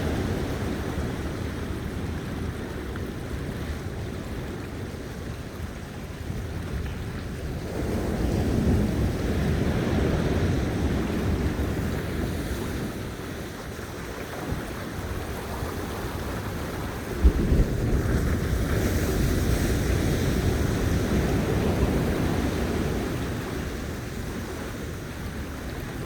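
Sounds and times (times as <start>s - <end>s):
sea waves washing onto beach: 0.0s - 26.0s
wind buffeting microphone: 0.0s - 26.0s.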